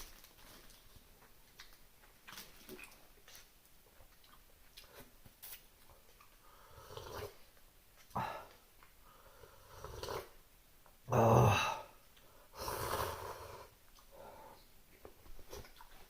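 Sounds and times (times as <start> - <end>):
person slurping noodles: 12.6 - 13.7.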